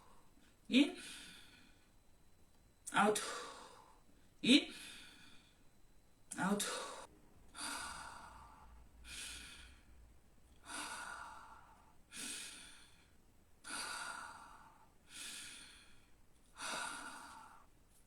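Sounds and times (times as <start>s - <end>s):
person breathing deeply: 1.0s - 1.9s, 3.2s - 4.0s, 4.7s - 5.7s, 6.6s - 17.7s.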